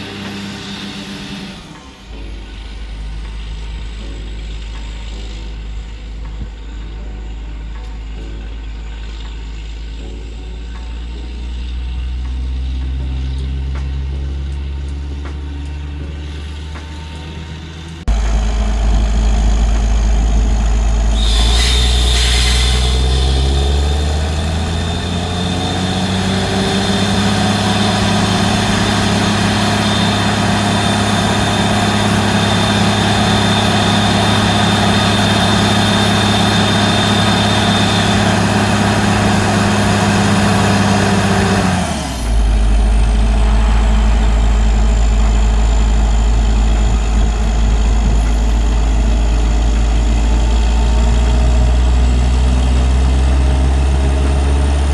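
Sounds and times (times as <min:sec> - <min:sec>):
drilling rig engine running hard: 0:00.0 - 0:54.9
thin high whine: 0:16.0 - 0:54.9.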